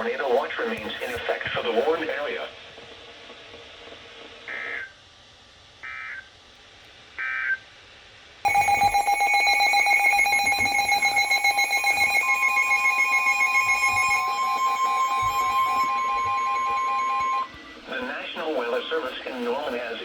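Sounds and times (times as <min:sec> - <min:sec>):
pulsing attention tone: 0:08.5 - 0:18.4
electronic data bursts: 0:08.5 - 0:20.0.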